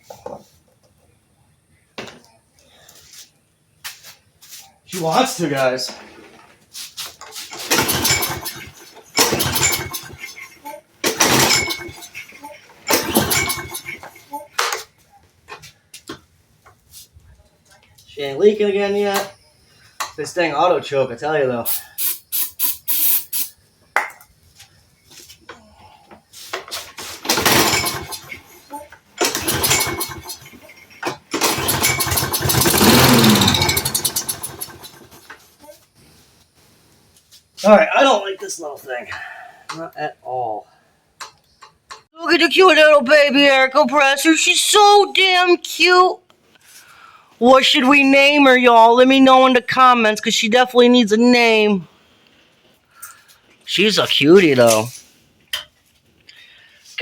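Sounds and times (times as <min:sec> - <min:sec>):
mower engine cranking and sputtering: 0:07.3 - 0:14.7, 0:27.0 - 0:35.5
recoil starter cord pulls: 0:07.5 - 0:10.2, 0:12.9 - 0:13.9, 0:27.2 - 0:28.4, 0:29.2 - 0:35.2.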